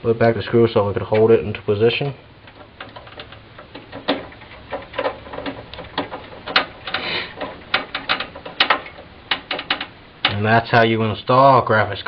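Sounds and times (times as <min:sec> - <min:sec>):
metal scrape: 0:02.5 - 0:10.4.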